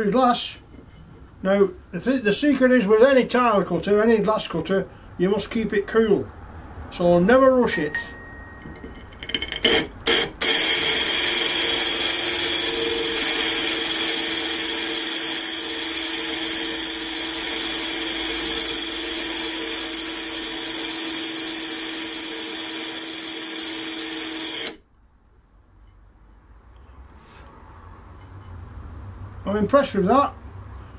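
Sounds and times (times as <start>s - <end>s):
electric drill grinding into glass: 9.3s - 24.8s.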